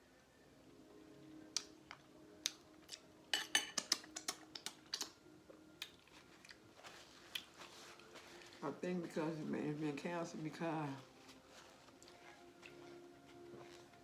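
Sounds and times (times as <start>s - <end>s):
clicks and smacks of eating seafood: 1.5s - 8.5s.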